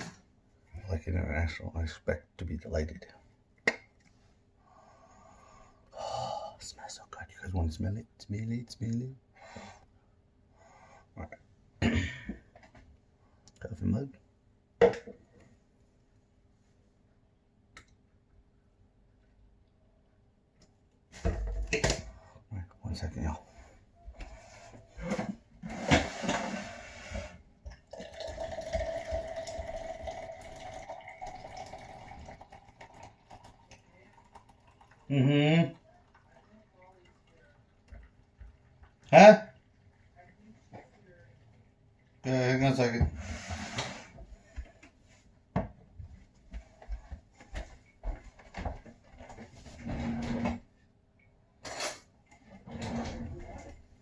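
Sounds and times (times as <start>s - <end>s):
water running into mug: 27.6s - 40.0s.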